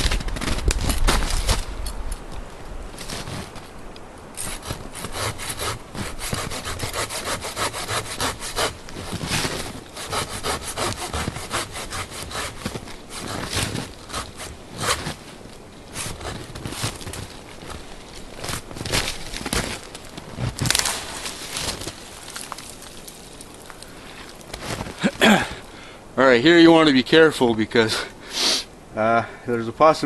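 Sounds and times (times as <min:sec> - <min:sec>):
pruning saw cutting dry wood: 0:04.4 - 0:15.2.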